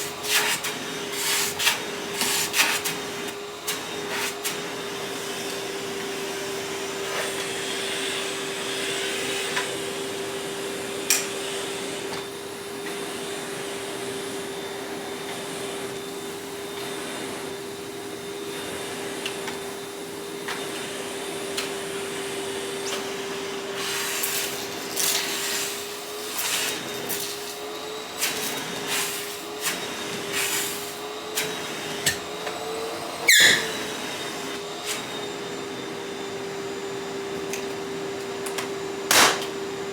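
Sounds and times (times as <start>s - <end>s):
vacuum cleaner motor whine: 0.0s - 39.9s
sharp rattle with squeal: 33.3s - 33.7s.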